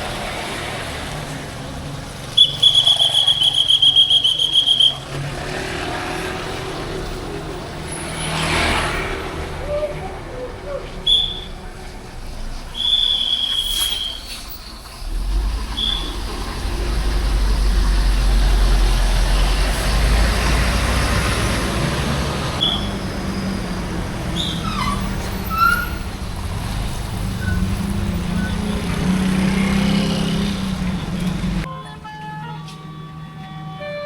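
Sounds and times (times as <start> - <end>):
bus diesel engine rumbling: 0.0 - 34.0.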